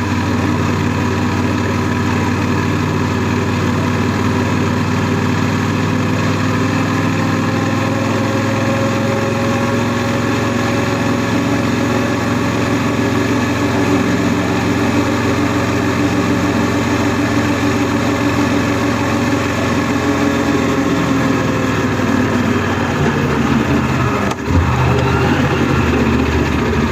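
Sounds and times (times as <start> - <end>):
motorcycle engine running: 0.0 - 26.9.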